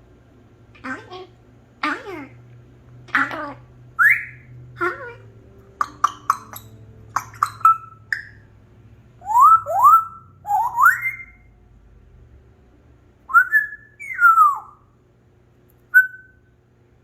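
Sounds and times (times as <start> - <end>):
parrot whistling: 4.0 - 5.0, 5.8 - 8.5, 9.2 - 11.5, 13.3 - 14.9, 15.9 - 16.5.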